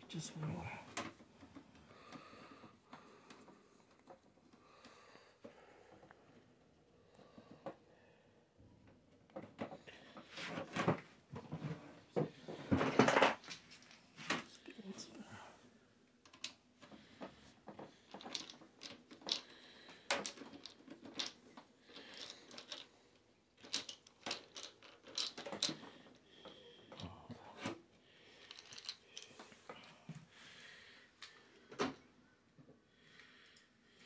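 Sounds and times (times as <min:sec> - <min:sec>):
plastic and metal parts clicking: 0:17.8 - 0:22.9, 0:23.6 - 0:26.2.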